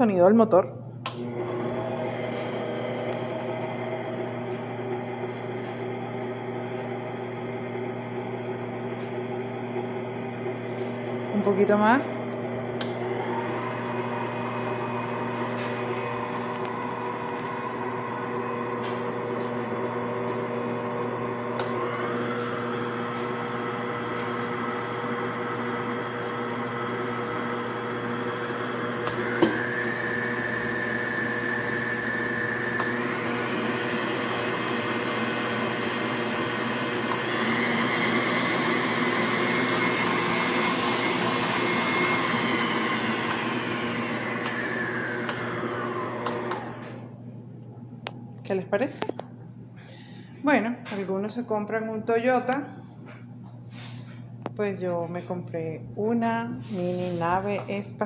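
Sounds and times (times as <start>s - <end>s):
stand mixer motor whine: 1.0s - 49.2s.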